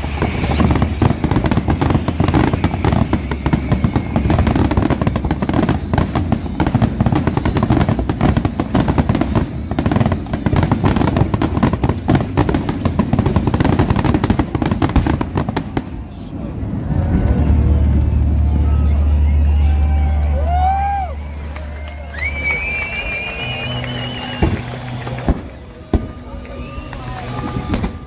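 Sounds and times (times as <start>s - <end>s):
fireworks bangs and crackling: 0.0s - 28.0s
music playing: 16.7s - 28.0s.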